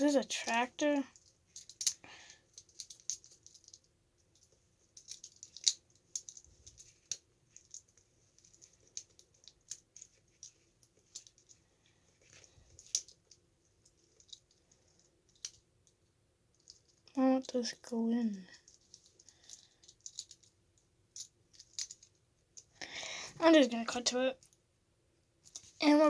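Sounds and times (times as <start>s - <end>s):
plastic toy parts clicking: 0.3s - 11.6s, 12.3s - 14.6s, 15.3s - 16.0s, 18.7s - 20.5s, 21.2s - 22.1s.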